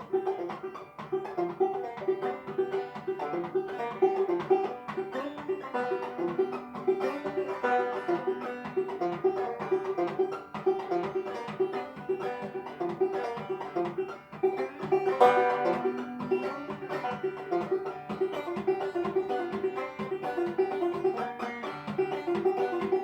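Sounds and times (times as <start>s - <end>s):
banjo playing lively tune: 0.0s - 23.0s.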